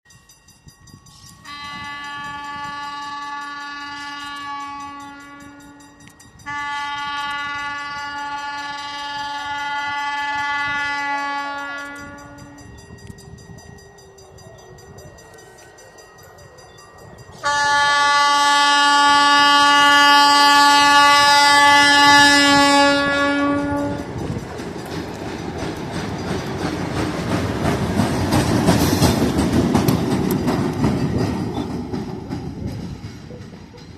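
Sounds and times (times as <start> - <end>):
locomotive air horn blast: 1.4 - 5.8, 6.4 - 12.6, 17.4 - 24.1
locomotive engine rumble: 11.6 - 33.9
wheels clattering on rails: 21.0 - 33.9.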